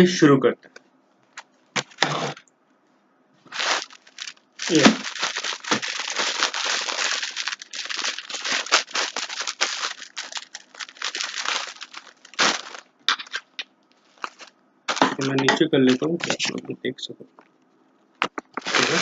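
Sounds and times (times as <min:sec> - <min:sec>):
packaging crinkling and rustling: 0:03.4 - 0:16.6, 0:18.6 - 0:19.0.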